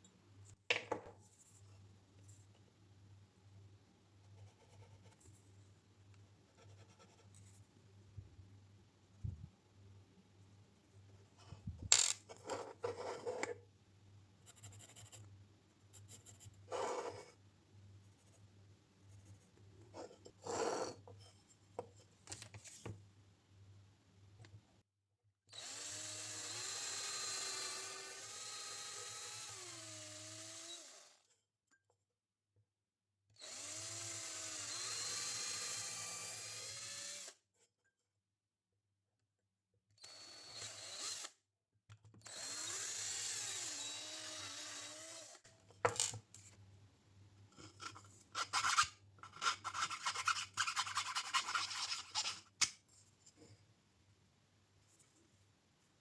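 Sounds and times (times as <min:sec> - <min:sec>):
power drill running: 0:25.6 - 0:31.1, 0:33.4 - 0:37.3, 0:40.0 - 0:41.3, 0:42.2 - 0:45.4.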